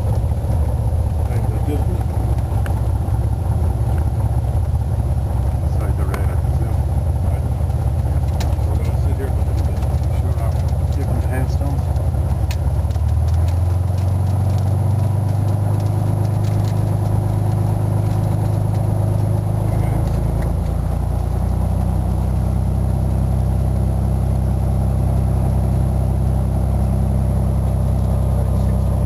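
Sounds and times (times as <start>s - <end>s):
airplane piston engine droning: 0.0s - 29.0s.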